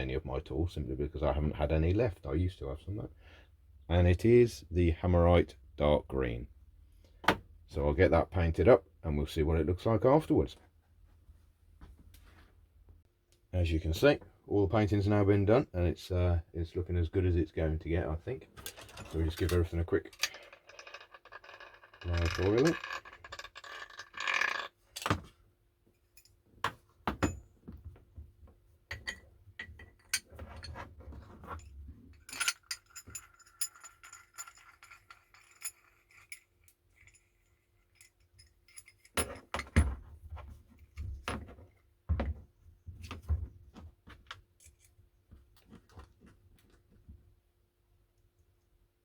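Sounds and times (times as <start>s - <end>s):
metal parts clinking and knocking: 18.5s - 25.4s, 28.9s - 40.0s.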